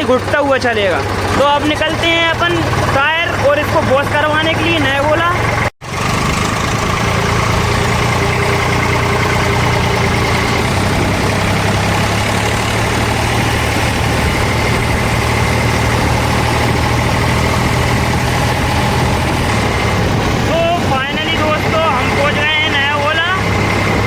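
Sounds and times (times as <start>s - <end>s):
tractor diesel engine running: 0.0s - 24.0s.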